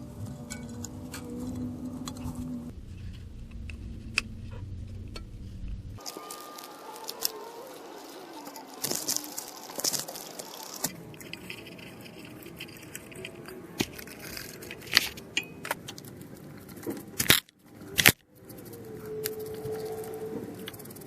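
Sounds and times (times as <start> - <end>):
metal tools clinking and scraping: 6.0 - 17.4.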